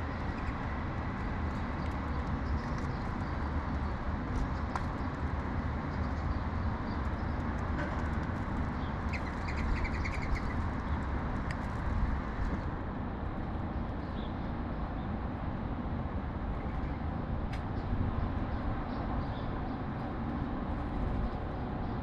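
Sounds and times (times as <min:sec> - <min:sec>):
sparrows chirping: 0:00.0 - 0:04.0, 0:08.7 - 0:11.1, 0:17.8 - 0:19.8
low rumble of city traffic: 0:00.0 - 0:22.0.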